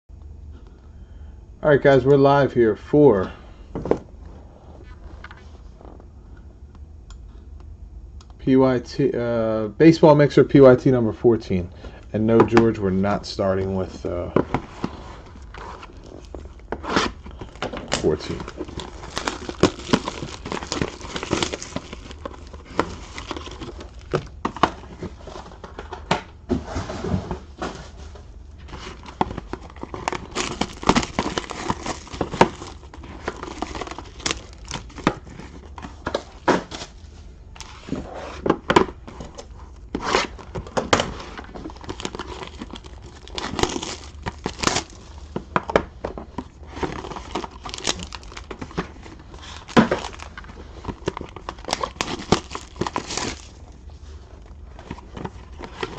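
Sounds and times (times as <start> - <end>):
plastic wrapping crinkling: 13.8 - 26.0, 28.6 - 37.9, 39.0 - 55.9
card packs tearing open: 13.9 - 25.8, 28.7 - 37.0, 39.1 - 45.8, 46.4 - 53.8, 54.4 - 55.9.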